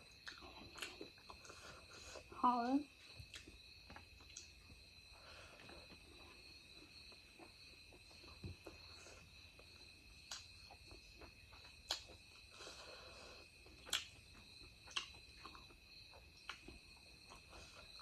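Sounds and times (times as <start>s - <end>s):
chewing mouth smacks: 3.3s - 4.6s, 11.8s - 12.2s, 13.8s - 14.2s, 14.8s - 15.8s.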